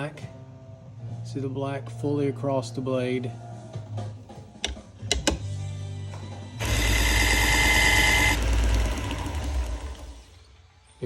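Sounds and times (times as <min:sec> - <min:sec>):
belt sharpener motor hum: 0:06.6 - 0:10.4.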